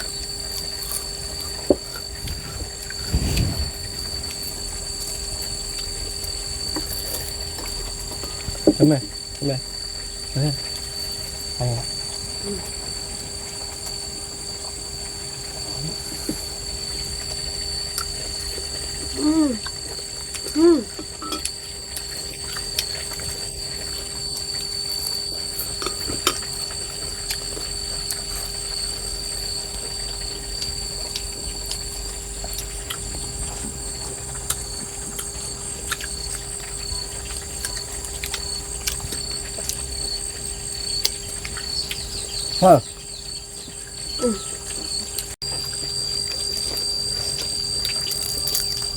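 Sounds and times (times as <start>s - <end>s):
insects chirring: 0.0s - 48.9s
chopsticks clinking against bowls: 21.1s - 21.6s.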